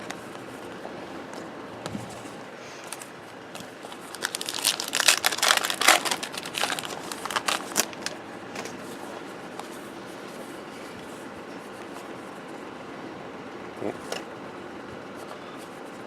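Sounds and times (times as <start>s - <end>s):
handling of cards: 0.0s - 12.6s
foil wrapper tearing and crinkling: 3.9s - 8.2s.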